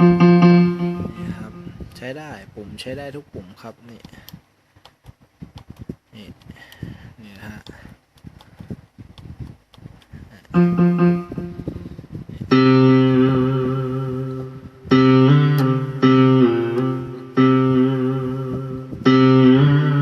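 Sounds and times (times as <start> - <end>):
keyboard synthesizer notes: 0.0 - 1.8, 10.5 - 20.0.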